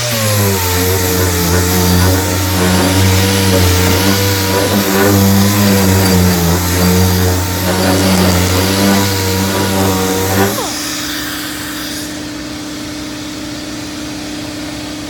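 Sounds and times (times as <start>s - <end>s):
palm sander humming: 0.0s - 11.2s
vacuum hiss: 0.0s - 11.8s.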